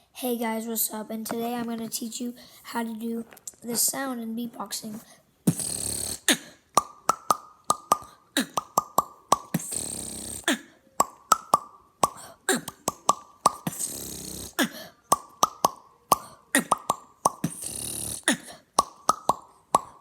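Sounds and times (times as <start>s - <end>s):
breathy hiss: 5.5s - 6.6s, 9.6s - 10.5s, 13.7s - 14.8s, 17.5s - 18.5s
beatboxed lip pops: 5.5s - 20.0s.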